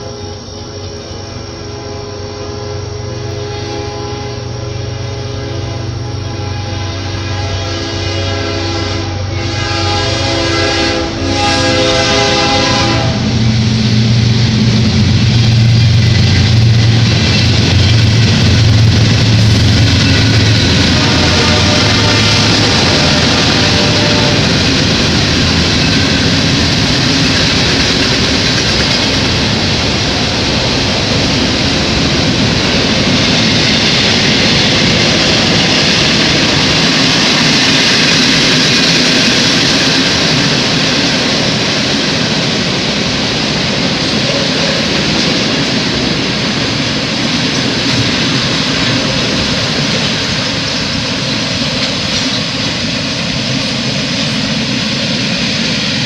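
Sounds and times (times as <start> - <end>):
freight train wheels on rail: 0.0 - 56.0.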